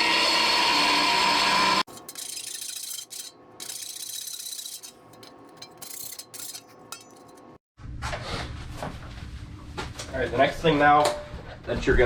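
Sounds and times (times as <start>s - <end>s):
hand tool scraping a door rail: 1.9s - 7.6s.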